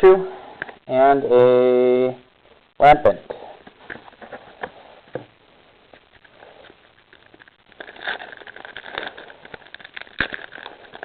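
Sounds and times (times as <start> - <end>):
foil wrapper crinkling: 6.0 - 11.0.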